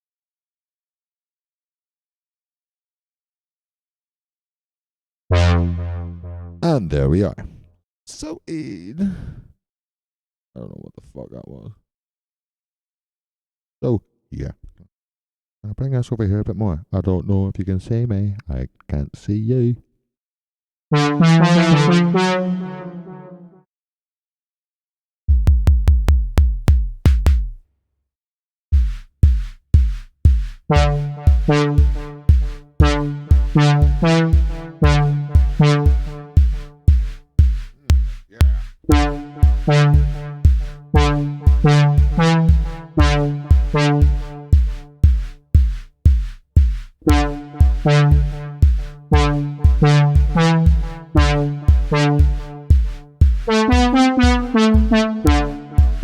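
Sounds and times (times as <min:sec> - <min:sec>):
high synth line: 0:05.3 - 0:06.6, 0:21.0 - 0:23.4, 0:38.9 - 0:44.8, 0:47.1 - 0:48.5, 0:49.2 - 0:52.5, 0:53.5 - 0:56.0
synth bass and chord riff: 0:05.3 - 0:06.6, 0:20.9 - 0:23.6, 0:30.7 - 0:36.9, 0:38.9 - 0:45.0, 0:47.1 - 0:56.0
drum machine beat: 0:25.3 - 0:27.6, 0:28.8 - 0:56.0.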